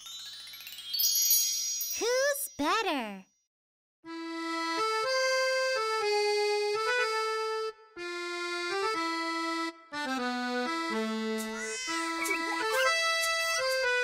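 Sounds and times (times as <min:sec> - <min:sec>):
reedy accordion-like melody: 0:04.1 - 0:14.0.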